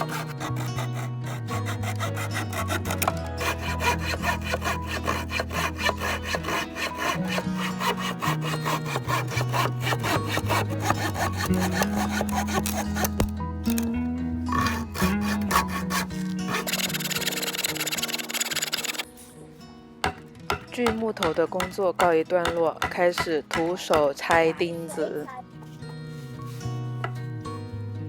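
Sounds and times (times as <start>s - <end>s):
handsaw cutting wooden board: 0.0s - 13.3s, 14.5s - 19.0s, 20.5s - 24.7s
background music: 0.0s - 28.0s.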